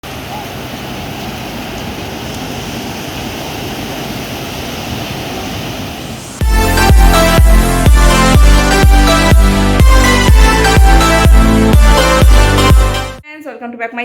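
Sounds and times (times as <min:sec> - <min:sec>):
sea surf breaking on beach: 0:00.0 - 0:06.4
electronic dance music: 0:06.4 - 0:13.2.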